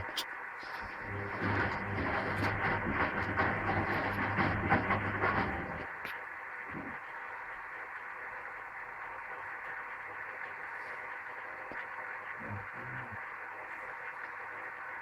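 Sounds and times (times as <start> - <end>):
washing machine hum: 0.0 - 7.0
steady hiss: 4.9 - 15.0.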